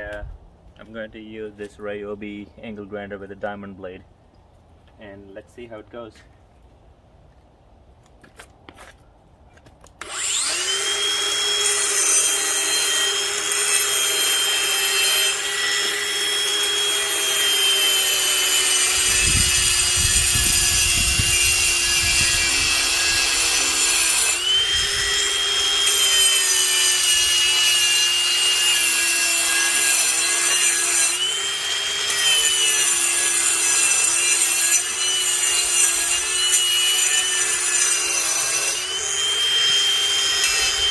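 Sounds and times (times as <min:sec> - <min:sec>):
angle grinder grinding concrete: 0:10.0 - 0:40.9.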